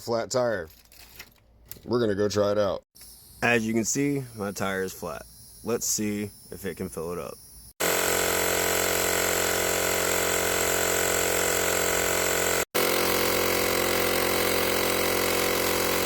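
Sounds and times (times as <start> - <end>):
air compressor motor buzzing: 7.4 - 16.0.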